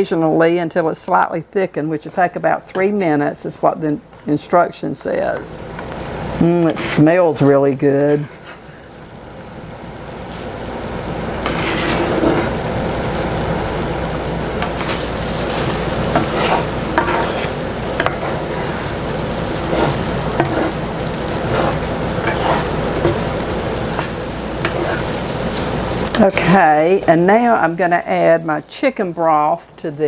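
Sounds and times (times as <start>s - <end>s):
sauce sizzling in a skillet: 3.4s - 28.4s
spoon scraping and stirring: 11.4s - 12.6s, 14.6s - 25.7s.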